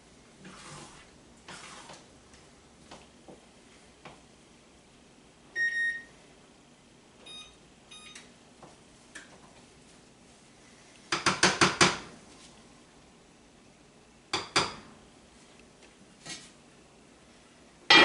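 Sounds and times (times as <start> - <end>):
appliance electronic beeps: 5.6 - 6.1, 7.2 - 8.3.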